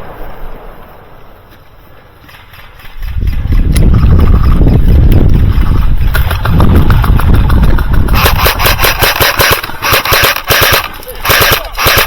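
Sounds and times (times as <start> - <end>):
airsoft guns firing rapidly: 2.2 - 12.0
microphone handling rumble: 3.0 - 8.8.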